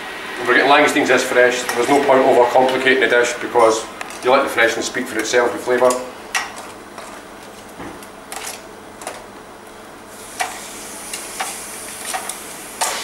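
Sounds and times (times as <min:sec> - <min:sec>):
steady hiss: 0:10.1 - 0:13.0.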